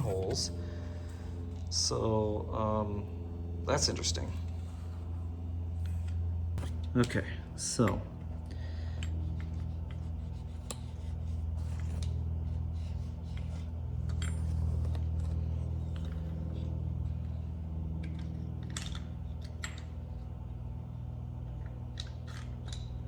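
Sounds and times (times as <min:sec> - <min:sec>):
steady low hum: 0:00.0 - 0:23.0.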